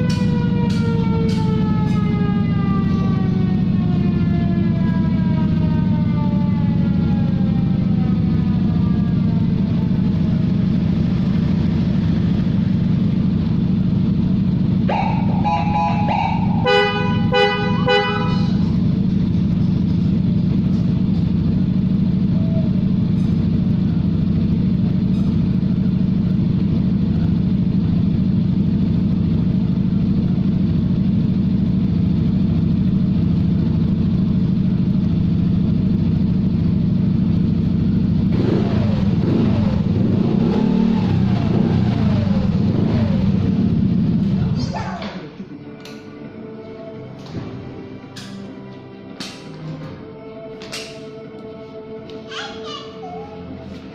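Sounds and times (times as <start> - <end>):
siren winding down: 0.0 - 11.1, 14.8 - 18.8, 38.3 - 43.8
scooter engine idling: 0.0 - 45.0
electric horn blasts and toots: 14.9 - 18.9.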